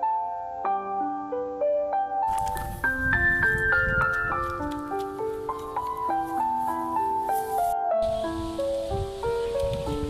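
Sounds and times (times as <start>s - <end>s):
gentle melodic background music: 0.0s - 10.0s.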